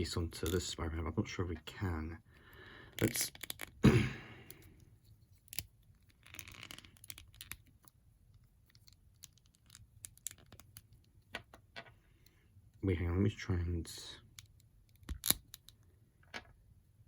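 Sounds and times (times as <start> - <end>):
plastic toy parts clicking: 2.9 - 3.8, 5.4 - 11.6, 14.3 - 16.5.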